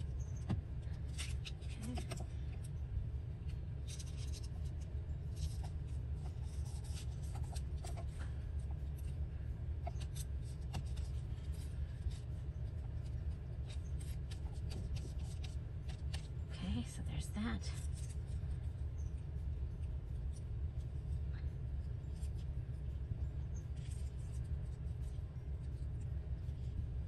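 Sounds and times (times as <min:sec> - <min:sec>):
steady low hum: 0:00.0 - 0:27.0
paper rustling: 0:03.8 - 0:09.1, 0:09.8 - 0:16.4, 0:17.7 - 0:18.4, 0:23.8 - 0:25.9.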